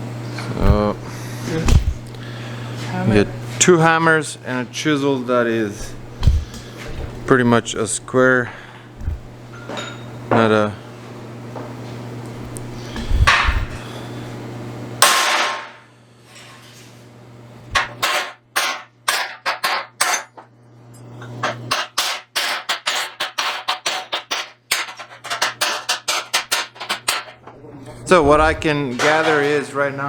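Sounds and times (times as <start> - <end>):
steady low hum: 0.0 - 15.0, 17.5 - 18.0, 27.3 - 29.5.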